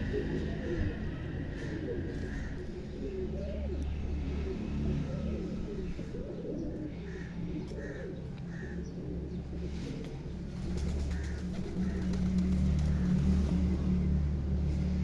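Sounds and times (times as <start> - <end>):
pigeons cooing: 0.0 - 15.0.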